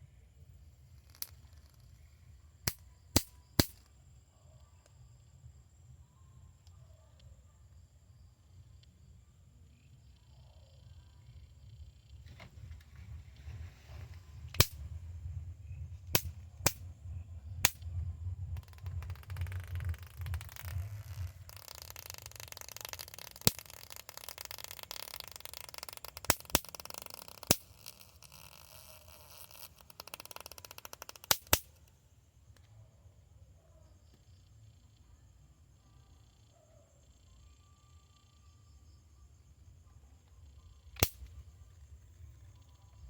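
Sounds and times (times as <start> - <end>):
faint crackling hiss: 0.0 - 32.8
electric mosquito zapper snapping: 2.7 - 3.8, 14.6 - 14.8, 18.6 - 31.8, 41.0 - 41.3
low hum: 11.7 - 21.5.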